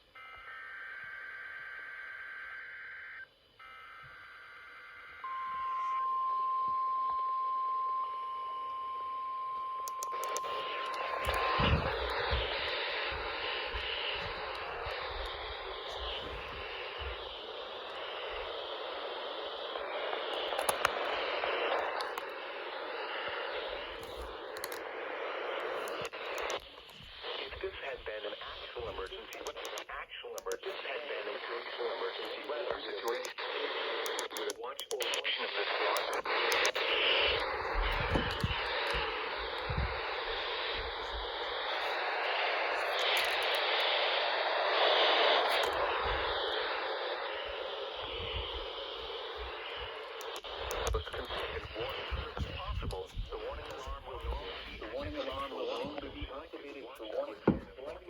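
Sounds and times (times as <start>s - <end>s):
radio static hiss: 0.0s - 58.0s
faint wavering whistles: 5.2s - 12.1s.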